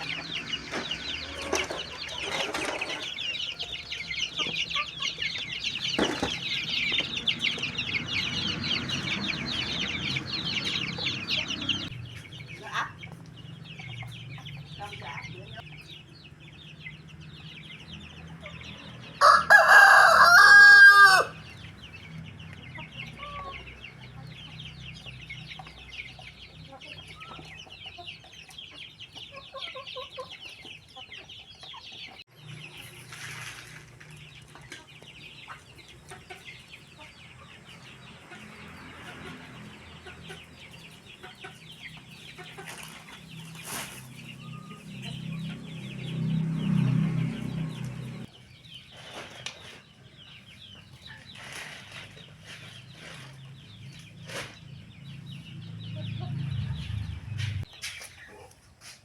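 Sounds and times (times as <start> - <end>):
rooster crowing: 19.2 - 21.4
chickens clucking softly: 22.5 - 32.2.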